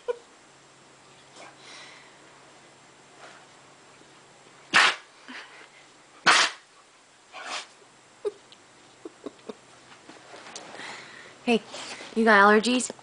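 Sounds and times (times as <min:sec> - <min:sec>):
pet sneezing: 0:04.7 - 0:05.1, 0:06.2 - 0:06.7, 0:07.4 - 0:07.8.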